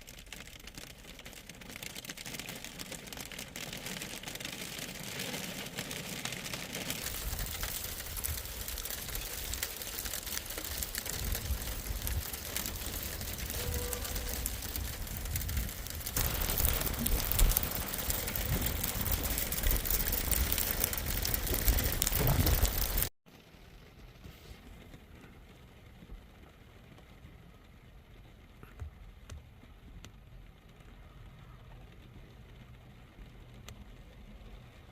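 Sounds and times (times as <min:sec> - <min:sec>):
rain pattering: 0:00.0 - 0:34.9
low rumble: 0:10.9 - 0:23.1.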